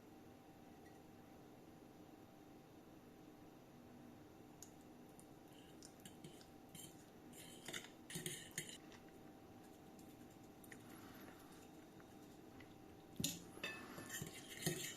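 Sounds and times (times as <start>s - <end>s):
metal spoon scraping a bowl: 6.0s - 9.0s, 13.2s - 14.9s.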